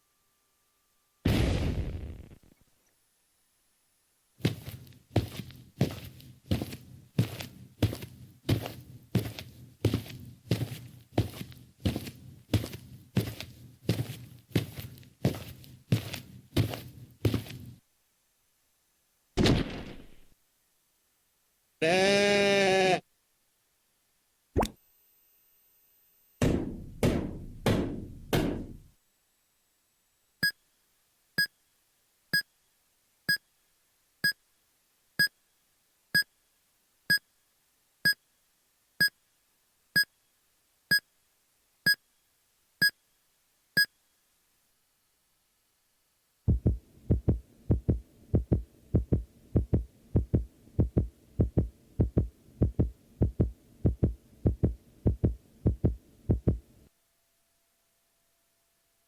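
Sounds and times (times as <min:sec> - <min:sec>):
low heartbeat-like thumping: 0:46.5 - 0:56.6.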